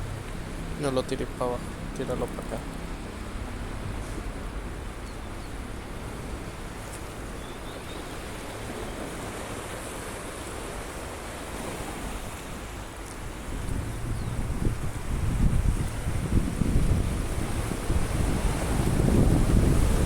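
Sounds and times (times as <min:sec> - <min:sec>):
sea surf rushing: 0:00.0 - 0:20.0
wind: 0:00.0 - 0:20.0.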